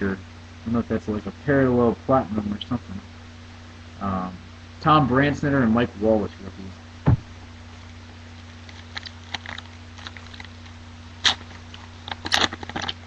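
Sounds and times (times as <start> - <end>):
low electrical hum: 0.0 - 13.0
low thump: 7.0 - 7.4
wrappers crinkling: 8.3 - 13.0
foil tearing rasp: 8.5 - 13.0.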